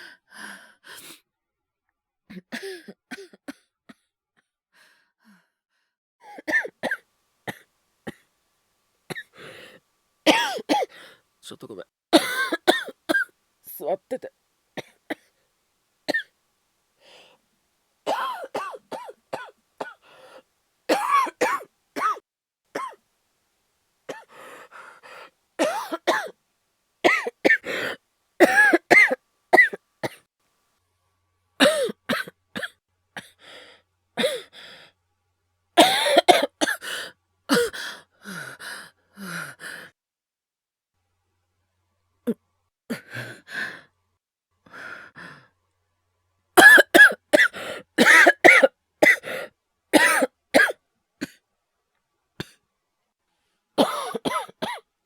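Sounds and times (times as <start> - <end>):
wheezy breaths: 0.0 - 1.2, 9.2 - 9.8, 10.8 - 11.3, 17.0 - 17.4, 19.9 - 20.5, 24.2 - 25.4, 27.5 - 28.0, 33.2 - 35.0, 36.7 - 40.0, 42.9 - 43.9, 44.6 - 45.6, 47.4 - 48.0, 49.1 - 49.6
man coughing: 10.3 - 10.9, 12.2 - 13.2, 20.9 - 22.2, 35.8 - 36.8, 46.6 - 49.3, 50.0 - 51.4, 53.8 - 54.8.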